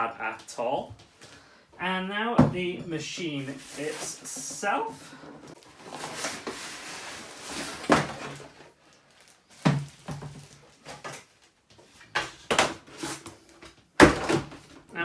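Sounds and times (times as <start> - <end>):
cardboard rustling and scraping: 3.4 - 13.7.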